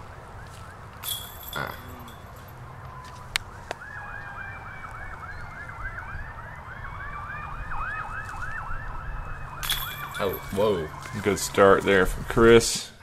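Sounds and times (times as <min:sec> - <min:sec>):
siren yelping: 0:02.8 - 0:11.9
siren wailing: 0:02.8 - 0:12.1.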